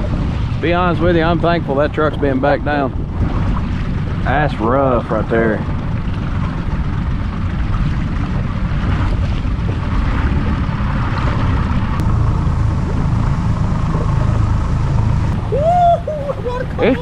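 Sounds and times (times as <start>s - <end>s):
boat engine and hull rumble: 0.0s - 17.0s
wind buffeting microphone: 0.0s - 17.0s.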